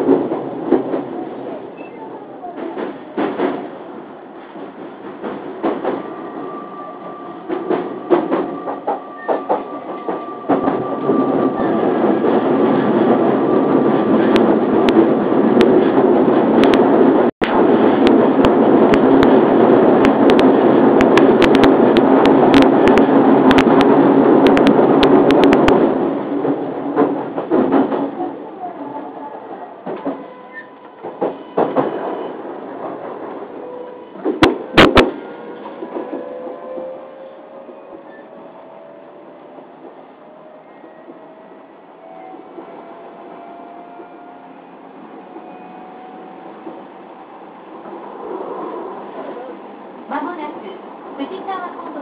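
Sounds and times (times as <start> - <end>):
train running rumble: 0.0 - 52.0
train wheels clicking on rails: 2.4 - 6.2, 7.1 - 28.4, 29.8 - 41.4.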